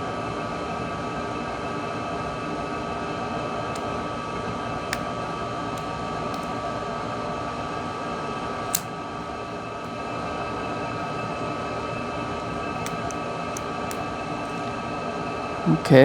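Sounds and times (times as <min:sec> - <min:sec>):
fan-like hum with faint whine: 0:00.0 - 0:16.0
small tools clicking: 0:05.8 - 0:06.6, 0:08.6 - 0:08.9, 0:12.8 - 0:14.6.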